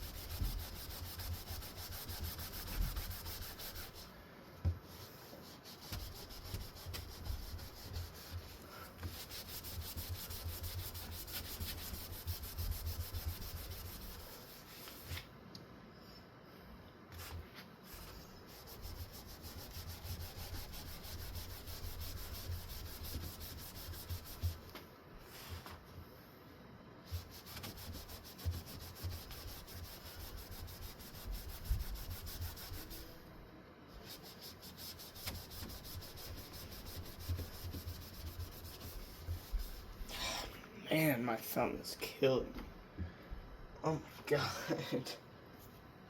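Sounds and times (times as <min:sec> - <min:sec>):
wipe rubbing fan blade: 0:00.0 - 0:04.2, 0:05.0 - 0:15.3, 0:17.2 - 0:24.7, 0:27.1 - 0:33.2, 0:34.0 - 0:40.2.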